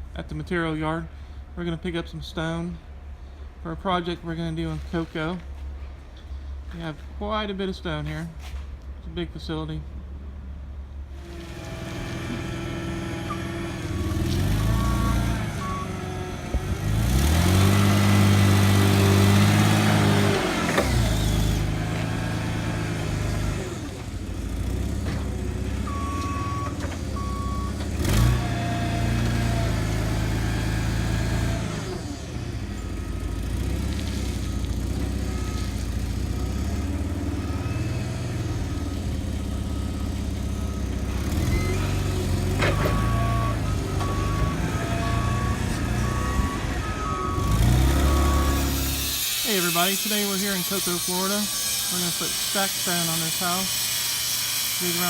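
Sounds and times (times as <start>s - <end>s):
heavy vehicle engine running: 9.9s - 55.0s
reversing beeper: 13.2s - 16.2s, 25.8s - 28.5s, 34.3s - 53.8s.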